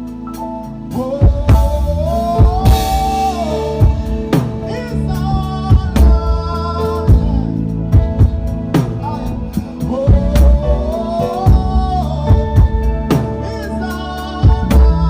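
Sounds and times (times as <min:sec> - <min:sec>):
live band playing worship song: 0:00.0 - 0:15.0
bass drum hits: 0:01.2 - 0:09.4.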